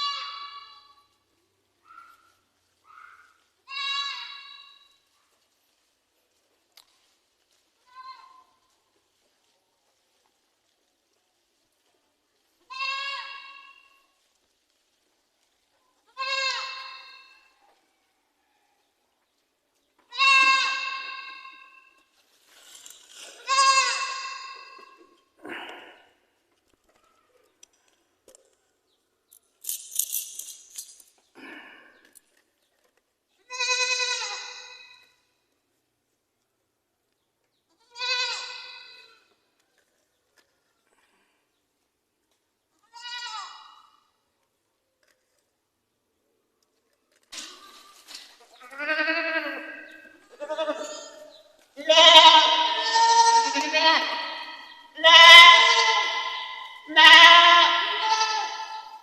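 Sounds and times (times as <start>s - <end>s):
goat bleating: 0.0s - 1.1s, 3.6s - 4.9s, 12.7s - 14.0s, 16.1s - 17.5s, 20.1s - 22.0s, 23.2s - 25.7s, 33.4s - 35.0s, 37.7s - 39.3s, 42.8s - 43.9s, 48.5s - 59.0s.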